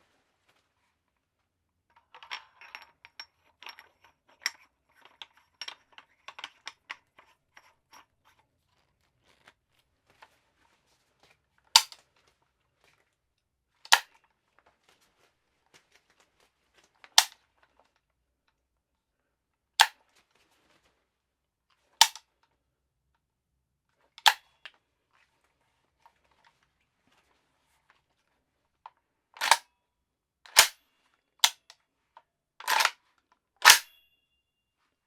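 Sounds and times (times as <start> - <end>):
gun handling clicks and rattles: 1.9 - 13.0, 13.9 - 18.0, 19.8 - 20.0, 22.0 - 22.3, 24.2 - 24.8, 29.4 - 29.7, 30.5 - 30.8, 31.4 - 34.0
gun action clacks: 11.8 - 12.0, 29.4 - 29.6, 30.5 - 30.8, 33.6 - 33.9.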